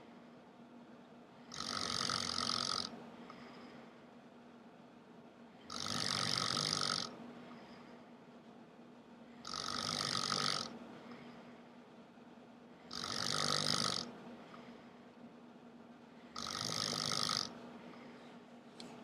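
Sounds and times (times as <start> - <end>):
man snoring heavily: 1.5 - 2.9, 5.7 - 7.1, 9.4 - 10.7, 12.9 - 14.1, 16.4 - 17.5.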